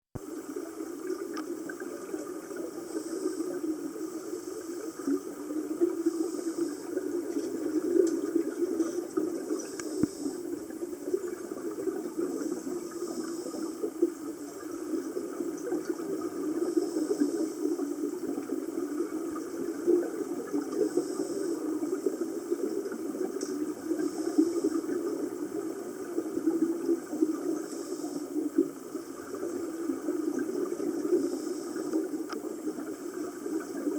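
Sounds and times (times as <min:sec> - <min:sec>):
steady underwater noise: 0:00.2 - 0:33.9.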